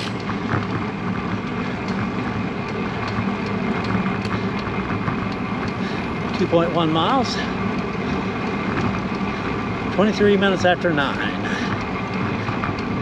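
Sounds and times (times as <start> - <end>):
tyres humming on pavement: 0.0 - 13.0
faint ticks: 2.6 - 6.4.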